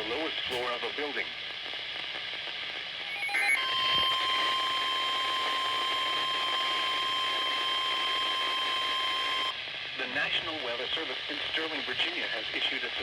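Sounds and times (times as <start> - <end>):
faint radio hiss: 0.0 - 13.0
steady warning alarm tone: 3.0 - 9.6
digital header tones: 3.1 - 9.6.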